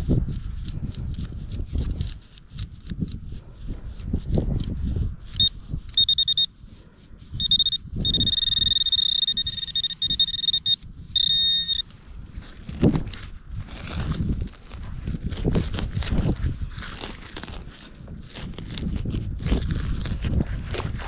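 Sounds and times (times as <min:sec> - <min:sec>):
digging in soil: 0:00.0 - 0:21.0
metal detector beeping: 0:05.3 - 0:06.6, 0:07.3 - 0:12.0.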